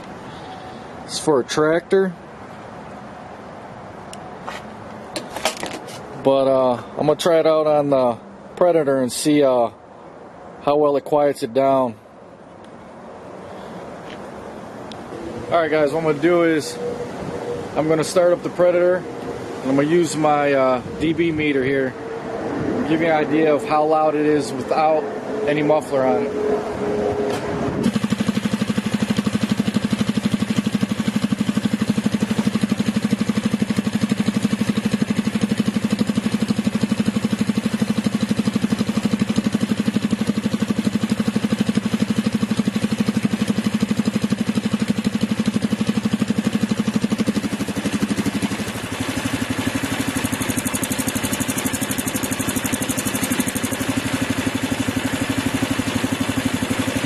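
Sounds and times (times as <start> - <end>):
unmuffled engine idling: 24.4 - 57.0.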